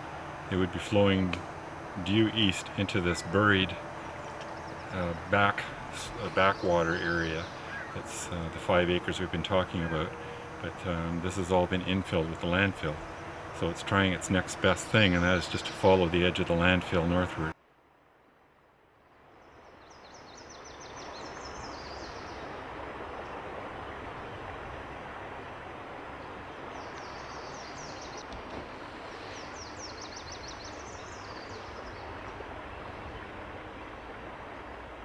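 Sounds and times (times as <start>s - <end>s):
songbird trilling: 1.8s - 17.0s, 26.7s - 28.2s, 29.1s - 32.3s.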